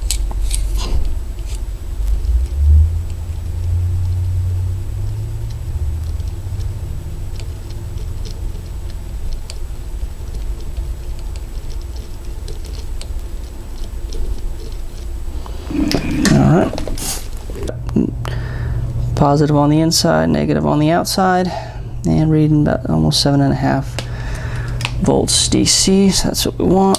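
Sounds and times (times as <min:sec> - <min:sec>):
small parts clicking and scratching: 0:00.0 - 0:04.4, 0:05.0 - 0:17.7
steady low rumble: 0:00.0 - 0:26.9.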